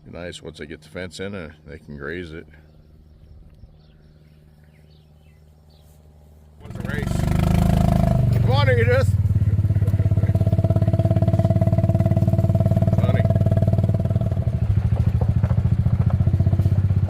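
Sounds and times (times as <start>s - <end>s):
small engine running: 6.6s - 17.0s.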